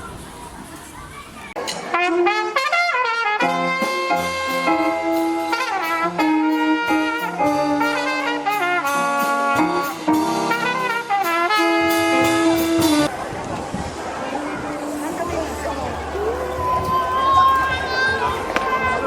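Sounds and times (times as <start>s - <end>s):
jazz band playing: 1.7s - 13.3s, 13.9s - 19.0s.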